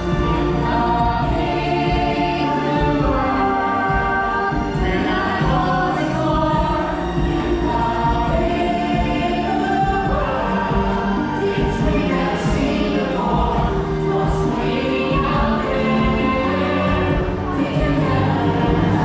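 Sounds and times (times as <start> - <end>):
group of voices singing: 0.0 - 19.0
steady musical backing: 0.0 - 19.0.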